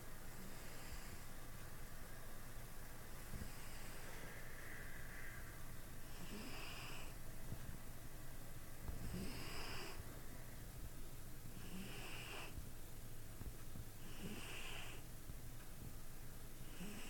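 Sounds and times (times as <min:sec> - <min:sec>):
cat snoring with whistling: 0:03.4 - 0:04.1, 0:06.0 - 0:07.2, 0:09.0 - 0:10.0, 0:11.6 - 0:12.6, 0:14.0 - 0:15.0, 0:16.6 - 0:17.0.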